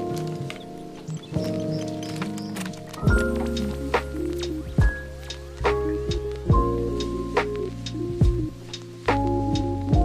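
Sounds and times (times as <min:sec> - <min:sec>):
held keyboard chords: 0:00.0 - 0:10.0
deep kick drum: 0:04.7 - 0:05.2, 0:06.1 - 0:06.9, 0:08.1 - 0:08.6, 0:09.6 - 0:10.0.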